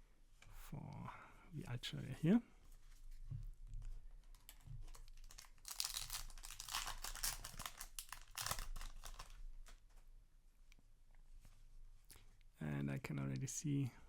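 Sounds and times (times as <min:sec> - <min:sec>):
foil wrapper crinkling and tearing: 0:04.3 - 0:09.8.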